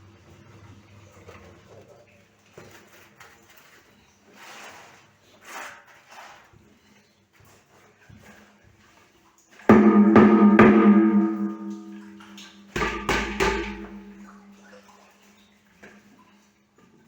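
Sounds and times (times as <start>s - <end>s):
ringing metal strikes: 9.7s - 14.6s.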